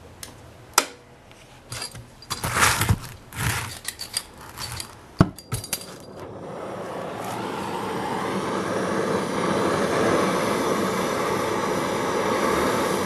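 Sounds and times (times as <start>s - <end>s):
metal tools clinking and scraping: 1.7s - 6.2s.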